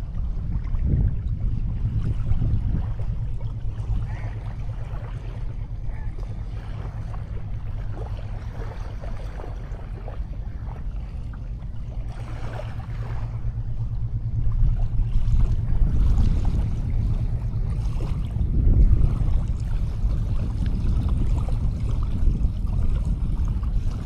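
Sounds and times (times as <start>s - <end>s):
sea waves on beach: 0.0s - 24.0s
wind rumbling on microphone: 0.0s - 24.0s.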